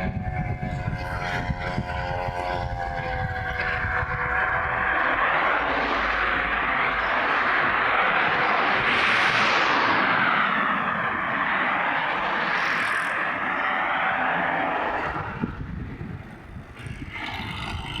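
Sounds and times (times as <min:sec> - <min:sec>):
small two-stroke engine buzzing: 0:00.0 - 0:04.9, 0:16.7 - 0:18.0.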